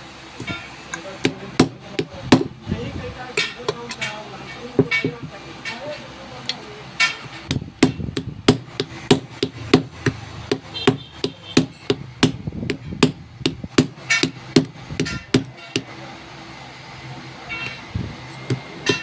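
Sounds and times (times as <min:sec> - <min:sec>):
hammer tapping on metal: 0:00.4 - 0:02.6, 0:03.4 - 0:06.0, 0:07.0 - 0:16.0, 0:18.5 - 0:19.0.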